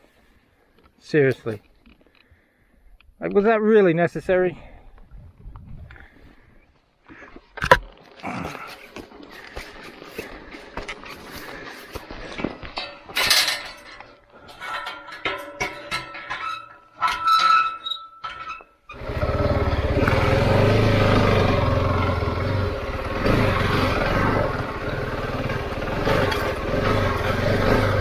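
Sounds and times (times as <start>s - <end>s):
motorcycle engine running: 18.9s - 28.0s.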